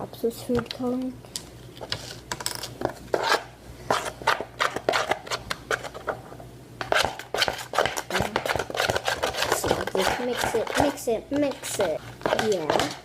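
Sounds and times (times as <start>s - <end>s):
utensil stirring slime in bowl: 3.1s - 6.2s, 6.8s - 13.0s.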